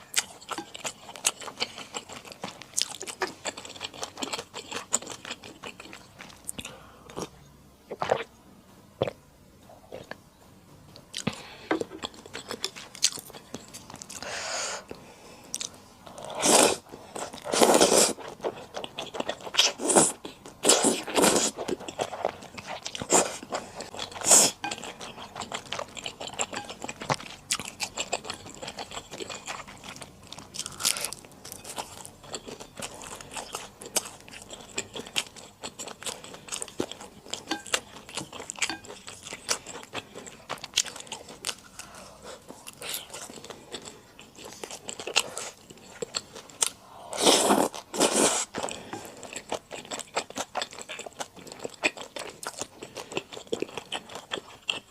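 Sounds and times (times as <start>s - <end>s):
chewing noodles close up: 15.5s - 54.9s.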